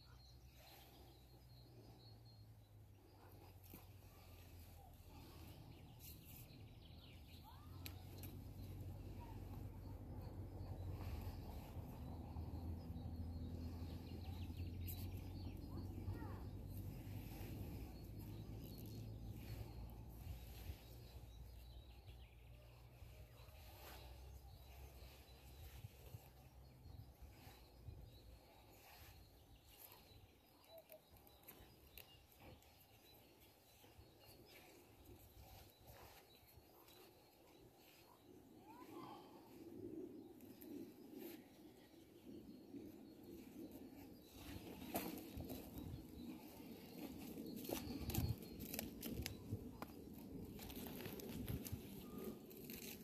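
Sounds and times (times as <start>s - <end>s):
small clicks and crinkling: 30.6s - 33.0s, 47.0s - 53.0s.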